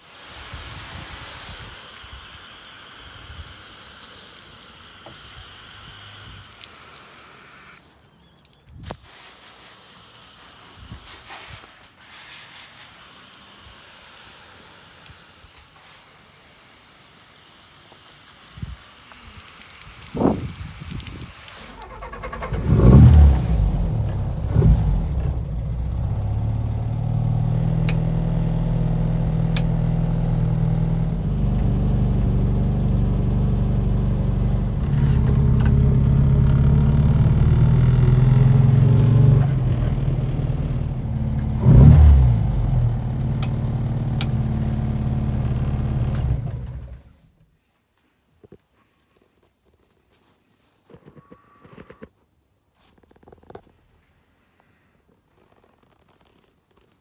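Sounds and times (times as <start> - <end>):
car engine running through gears: 20.2 - 47.1.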